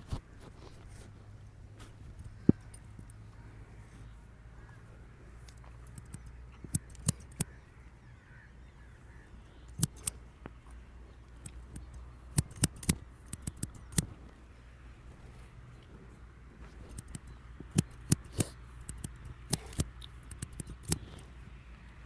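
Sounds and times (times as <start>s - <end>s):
scissors snipping: 5.8s - 7.5s, 9.7s - 10.1s, 11.4s - 14.1s, 16.9s - 21.2s.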